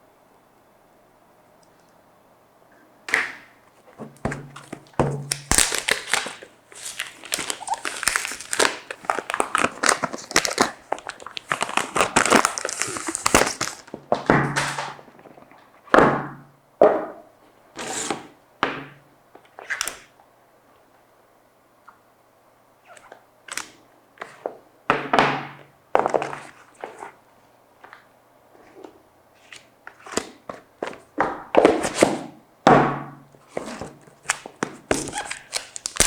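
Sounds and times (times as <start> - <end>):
rustling packaging: 3.8 - 15.8, 33.4 - 36.0.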